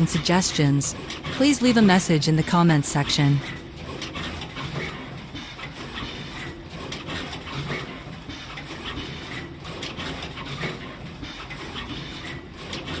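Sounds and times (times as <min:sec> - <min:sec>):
machine humming: 0:00.0 - 0:12.8.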